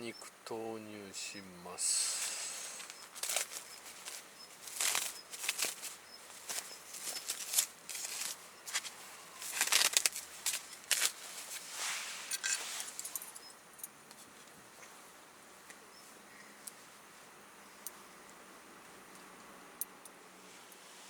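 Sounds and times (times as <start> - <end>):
plastic packaging crinkling and tearing: 2.8 - 11.6.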